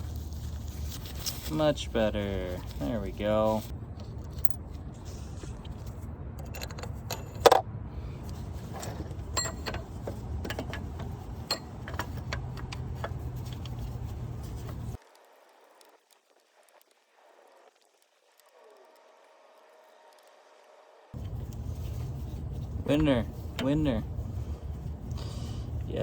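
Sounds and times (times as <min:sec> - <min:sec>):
low background rumble: 0:00.0 - 0:15.0, 0:21.2 - 0:26.0
metal tools clinking: 0:04.2 - 0:04.6, 0:06.4 - 0:07.6, 0:08.7 - 0:13.7.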